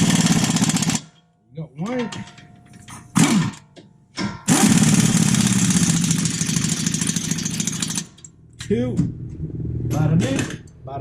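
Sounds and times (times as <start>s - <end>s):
pneumatic impact gun rattling: 0.0s - 1.2s, 3.0s - 8.3s.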